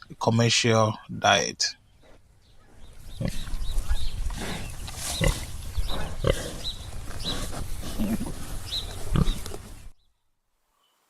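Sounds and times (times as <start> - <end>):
pigs grunting: 2.0 - 9.8.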